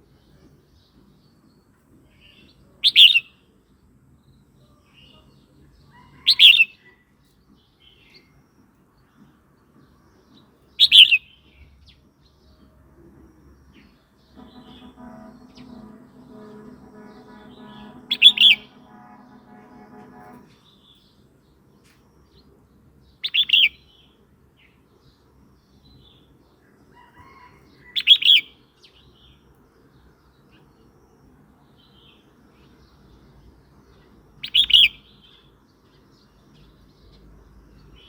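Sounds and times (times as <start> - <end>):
bird chirping calls: 2.3 - 3.3, 10.8 - 11.5, 13.4 - 20.9, 34.4 - 35.3
faint steady hum: 11.9 - 23.2.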